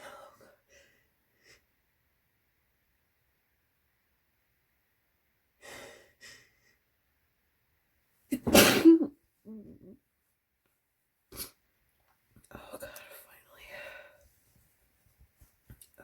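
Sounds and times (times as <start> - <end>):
person sneezing: 8.4 - 9.1.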